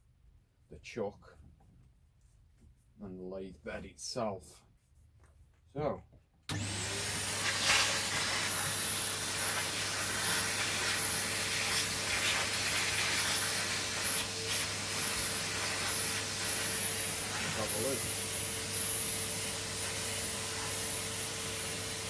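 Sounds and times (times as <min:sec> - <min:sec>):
vacuum cleaner running: 0:06.5 - 0:22.0.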